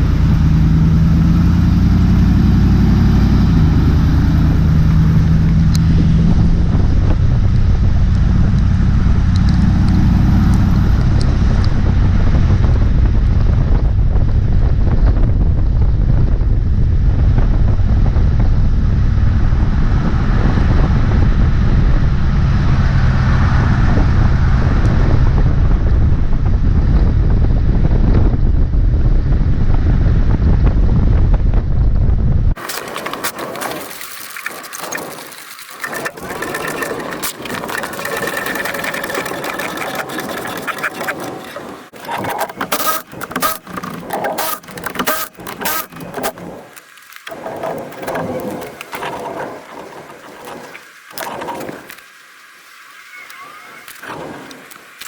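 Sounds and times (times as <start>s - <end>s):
van engine rumbling: 0.0s - 33.4s
wind noise on microphone: 0.0s - 52.2s, 53.1s - 55.0s.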